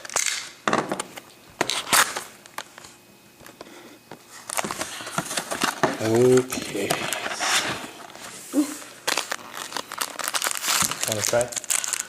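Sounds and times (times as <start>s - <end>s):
foil wrapper crinkling and tearing: 1.6s - 2.8s, 4.3s - 8.2s, 8.9s - 12.0s.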